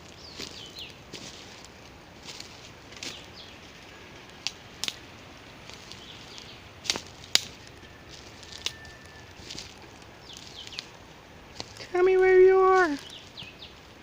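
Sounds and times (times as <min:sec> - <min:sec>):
footsteps on dry leaves and twigs: 0:00.0 - 0:14.0
faint thin whistle: 0:07.8 - 0:09.4.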